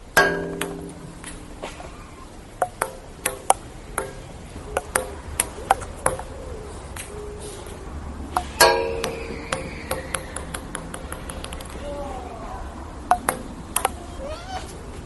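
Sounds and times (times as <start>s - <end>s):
ping-pong ball hits: 0.0s - 6.3s, 8.3s - 11.8s, 13.1s - 14.0s.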